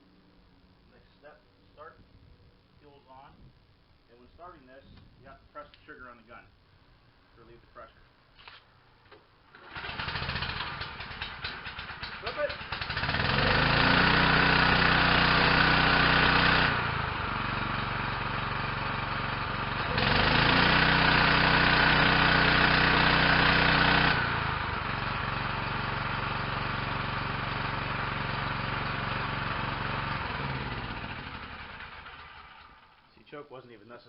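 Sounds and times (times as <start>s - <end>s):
pressure washer engine running: 9.5s - 33.0s.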